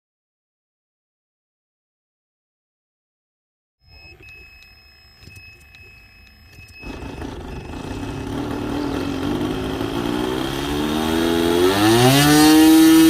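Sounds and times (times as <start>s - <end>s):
model airplane engine revving: 6.8s - 13.0s.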